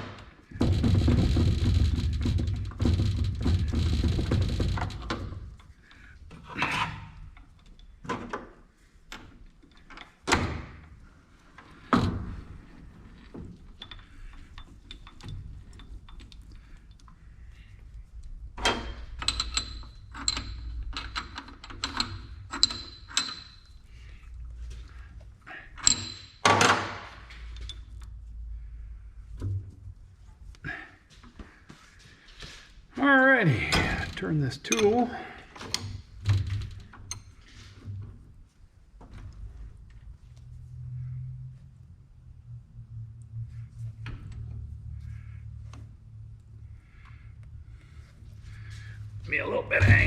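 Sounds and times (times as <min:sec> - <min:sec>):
thunks and knocks of metal parts: 0:00.0 - 0:05.7, 0:11.7 - 0:16.9, 0:18.6 - 0:23.7, 0:25.8 - 0:27.9, 0:49.7 - 0:50.0.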